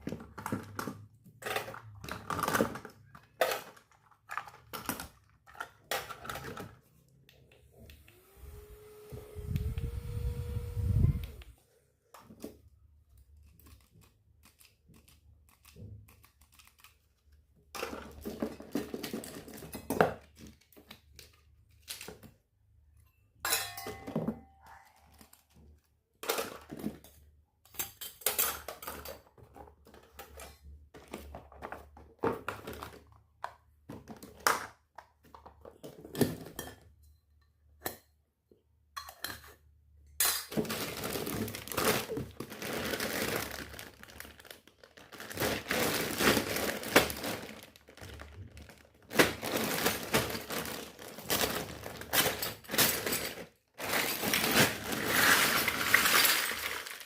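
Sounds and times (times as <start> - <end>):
toy kitchen pieces clinking: 0.1 - 6.8, 23.0 - 24.7, 26.2 - 30.7, 39.0 - 44.3, 49.2 - 57.0
packaging crinkling: 40.6 - 57.0.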